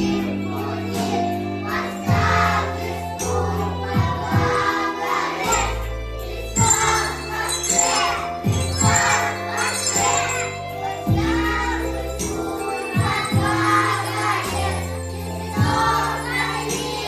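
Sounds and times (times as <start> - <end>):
jingling bells: 0.0 - 17.0
song with sung voices: 0.0 - 17.0.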